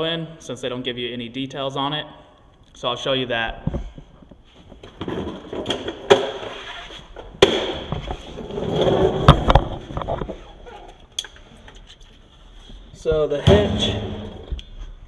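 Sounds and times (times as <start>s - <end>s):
clattering handling noise: 7.1s - 12.8s.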